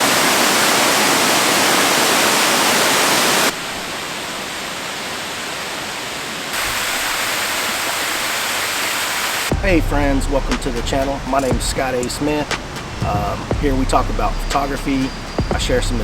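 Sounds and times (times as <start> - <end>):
steady rushing noise: 9.4 - 16.0.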